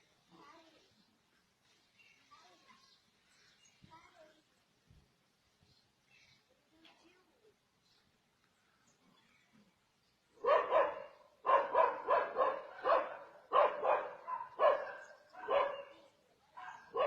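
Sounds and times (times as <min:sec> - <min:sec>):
dog barking: 0:10.4 - 0:17.0.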